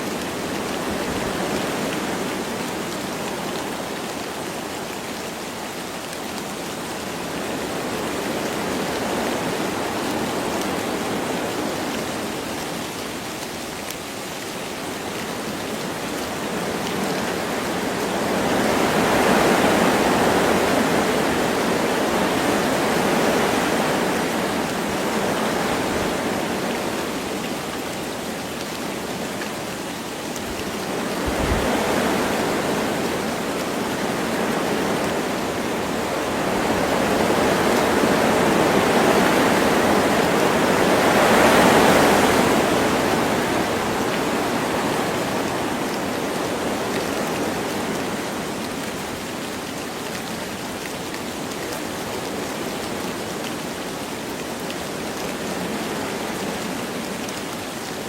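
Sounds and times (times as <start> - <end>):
light rain falling: 0.0 - 58.0
wind gusting through trees: 0.0 - 58.0.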